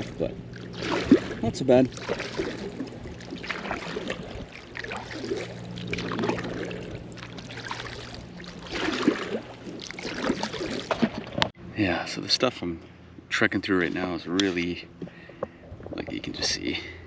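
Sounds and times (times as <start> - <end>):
paddle splashing in water: 0.0 - 11.5
steady low hum: 0.0 - 17.0.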